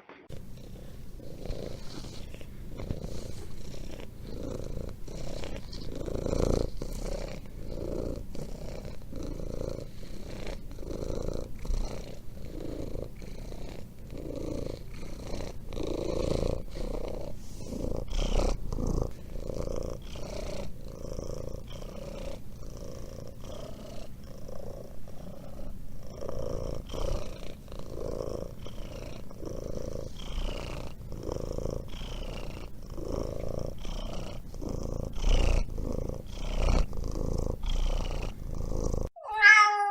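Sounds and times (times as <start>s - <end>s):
cat purring: 0.2s - 39.2s.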